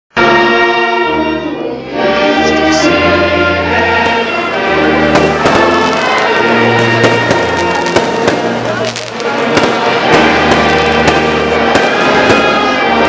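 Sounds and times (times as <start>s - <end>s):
choral music chords: 0.2s - 13.0s
firework bangs and crackles: 3.5s - 13.0s.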